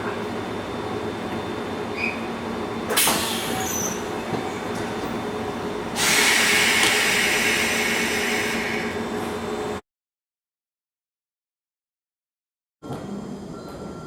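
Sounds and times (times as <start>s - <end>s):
railway car equipment humming: 0.0s - 9.8s, 12.8s - 14.0s.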